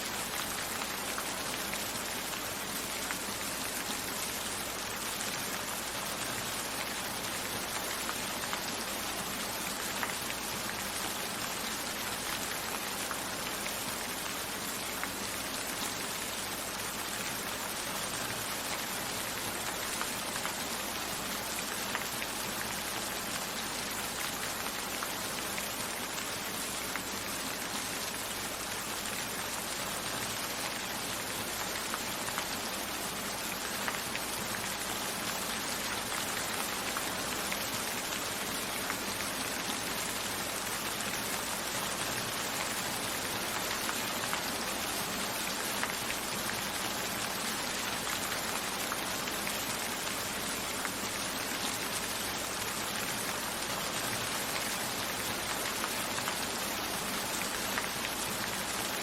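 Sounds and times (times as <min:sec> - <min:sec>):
steady rain: 0:00.0 - 0:59.0.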